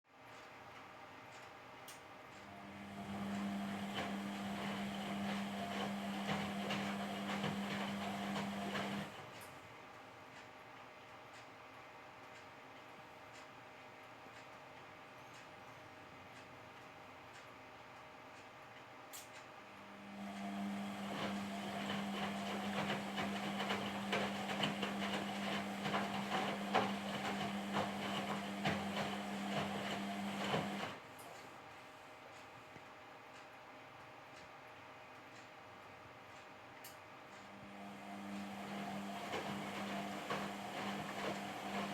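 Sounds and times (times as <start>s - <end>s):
washing machine motor hum: 2.4s - 9.4s, 19.8s - 31.4s, 37.4s - 41.9s
washing machine clicking and knocking: 20.9s - 31.0s.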